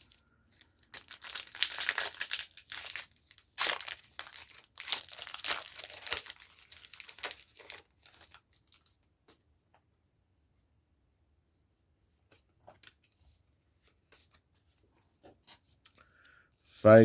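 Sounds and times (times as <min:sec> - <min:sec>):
foil wrapper crinkling and tearing: 0:00.0 - 0:09.0.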